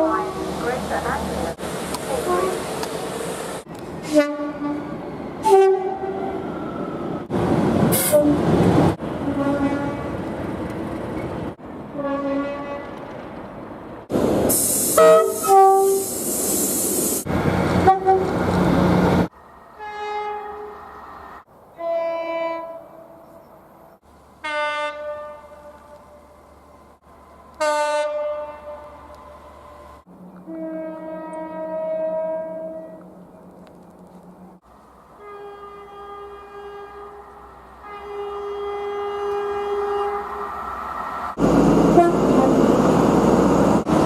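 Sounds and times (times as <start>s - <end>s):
train horn blasts: 4.0s - 6.4s, 9.2s - 10.2s, 11.9s - 13.0s, 15.0s - 16.0s, 17.8s - 18.4s, 19.7s - 20.8s, 21.8s - 23.2s, 24.4s - 26.2s, 27.6s - 29.0s, 30.4s - 33.1s, 35.2s - 40.4s, 41.8s - 42.7s
train running noise: 23.7s - 44.0s.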